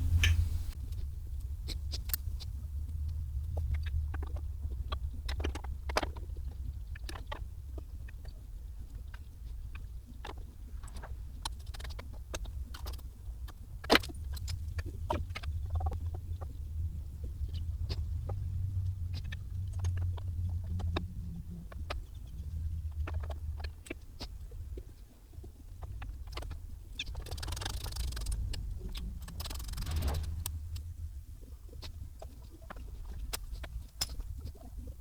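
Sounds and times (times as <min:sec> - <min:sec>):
steady low hum: 0:00.0 - 0:05.8, 0:13.6 - 0:35.0.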